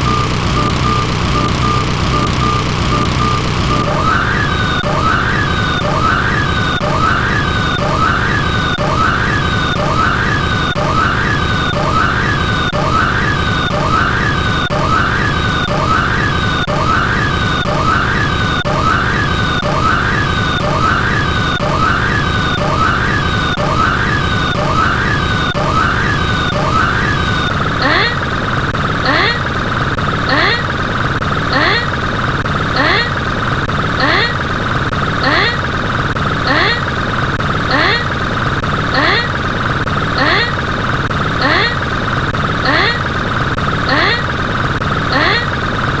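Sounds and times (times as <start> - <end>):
steady high tone: 0.0 - 28.2
sweeping siren tone: 0.0 - 28.4
low hum: 0.0 - 46.0.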